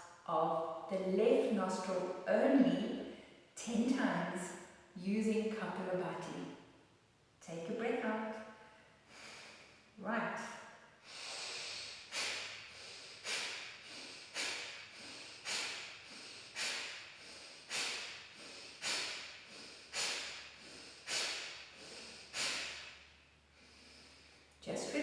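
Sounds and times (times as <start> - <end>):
forceful nasal exhalations: 11.0 - 24.6.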